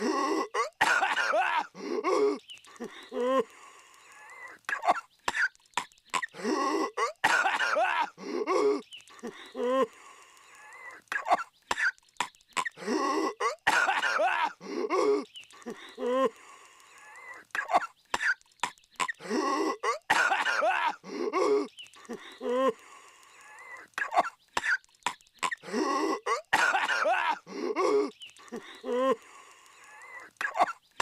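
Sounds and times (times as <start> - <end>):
cartoon character coughing violently: 0.0 - 2.4, 6.2 - 8.8, 12.6 - 15.3, 19.0 - 21.7, 24.0 - 24.8, 25.4 - 28.1, 30.4 - 30.8.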